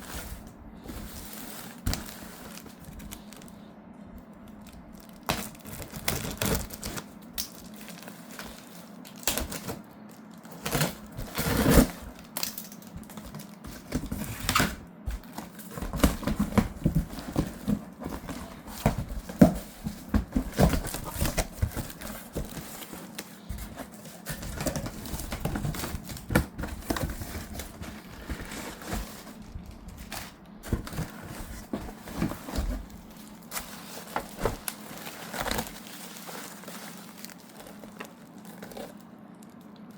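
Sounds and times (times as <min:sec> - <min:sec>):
plastic wrap and cardboard crinkling: 0:00.0 - 0:39.9.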